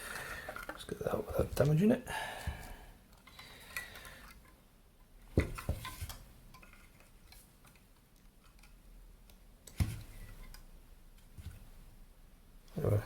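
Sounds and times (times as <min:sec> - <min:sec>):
small parts clicking and tapping: 0:02.6 - 0:04.6, 0:05.5 - 0:09.8.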